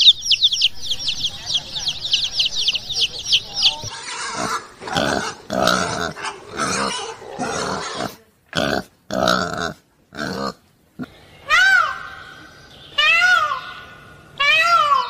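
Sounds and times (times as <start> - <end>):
pig grunting: 3.8 - 11.1.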